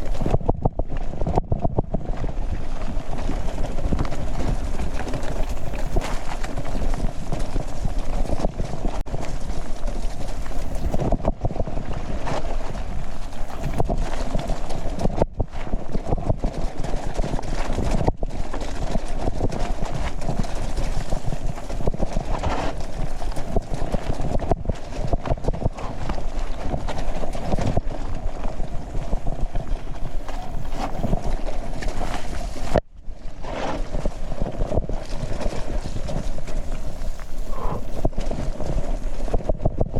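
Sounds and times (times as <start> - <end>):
mountain bike rattling: 0.0 - 1.3, 2.1 - 39.9
steady rush of noise: 3.8 - 11.1, 13.0 - 14.0, 20.4 - 22.0, 28.8 - 33.0, 36.3 - 38.2.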